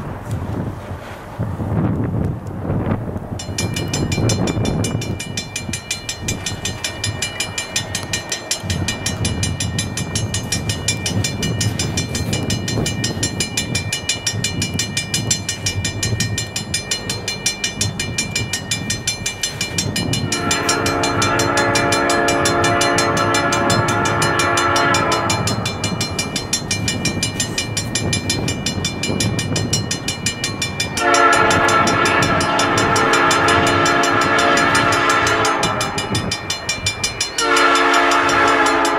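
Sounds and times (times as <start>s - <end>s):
freight train rumble: 0.0s - 38.9s
locomotive air horn blasts: 20.2s - 25.7s, 31.0s - 36.2s, 37.4s - 38.9s.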